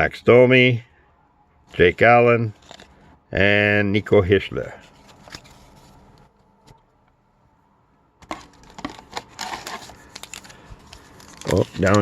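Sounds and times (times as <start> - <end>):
cards and wrappers rustling: 2.5 - 3.0, 4.8 - 6.2, 8.2 - 12.0
cards clicking and crinkling: 8.2 - 12.0.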